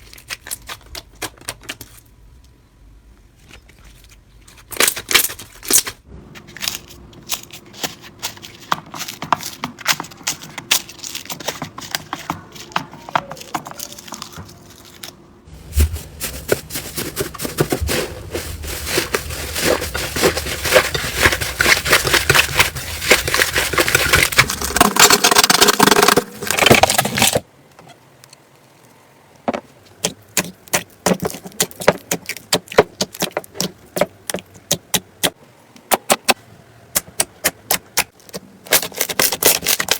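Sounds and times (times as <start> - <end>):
slime crackling and popping: 37.0 - 39.9.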